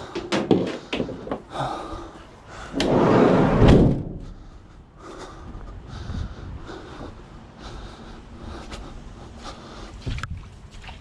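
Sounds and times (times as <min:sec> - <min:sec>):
sliding door rolling rumble: 0:02.7 - 0:04.4
van door slamming: 0:03.4 - 0:04.3.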